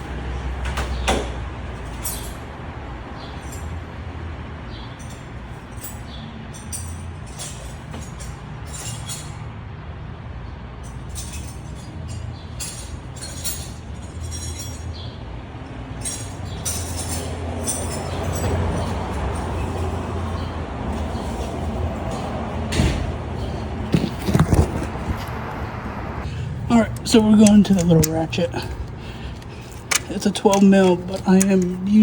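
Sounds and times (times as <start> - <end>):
hand tools clinking on metal: 1.8 - 2.5, 4.9 - 9.4, 10.9 - 15.1, 16.0 - 22.6, 26.2 - 32.0
steady low rumble: 10.1 - 32.0.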